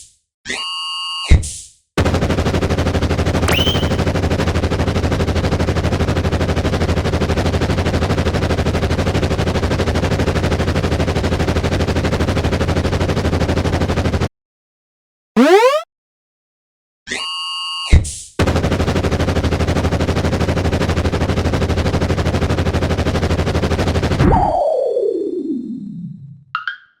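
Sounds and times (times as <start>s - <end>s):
short rising whistle: 3.5s - 4.1s.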